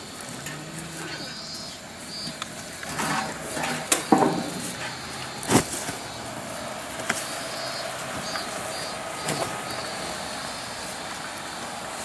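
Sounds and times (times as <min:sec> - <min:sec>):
outdoor background noise: 0:00.0 - 0:12.0
sharp knocks and clatters: 0:02.9 - 0:04.9.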